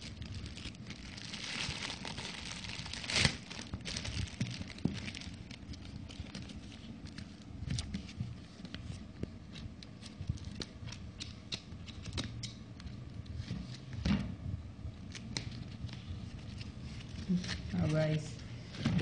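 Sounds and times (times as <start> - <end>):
packaging rustling and scratching: 0.0 - 11.0.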